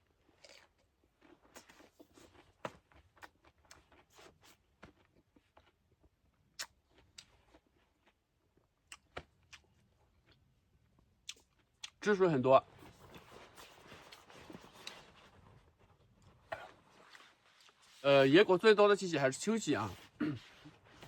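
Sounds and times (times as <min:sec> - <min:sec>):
person chewing crisp fruit: 0:00.0 - 0:12.1.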